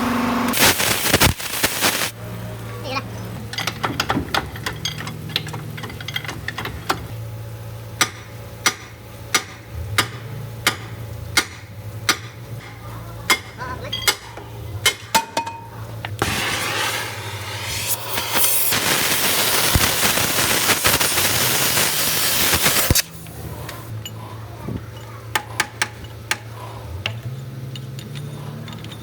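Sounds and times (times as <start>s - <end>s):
hand tools clinking on metal: 24.9s - 29.0s.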